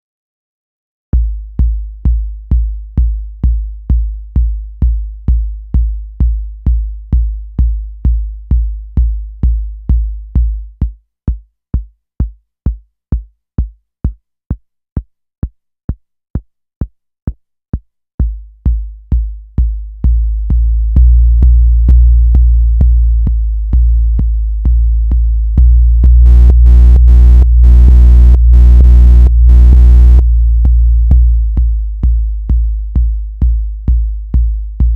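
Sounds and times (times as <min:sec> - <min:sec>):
electronic bass drum kicks: 0:01.2 - 0:11.9, 0:18.2 - 0:34.9.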